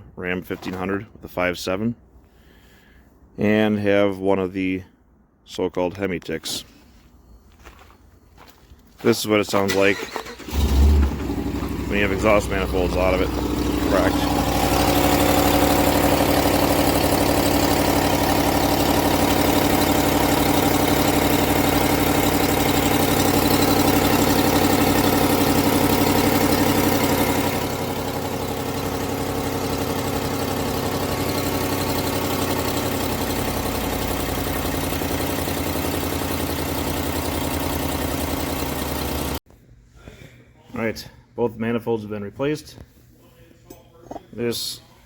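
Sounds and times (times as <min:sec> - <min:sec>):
truck engine idling: 0:09.7 - 0:39.4
fast exhaust ticking: 0:10.5 - 0:39.4.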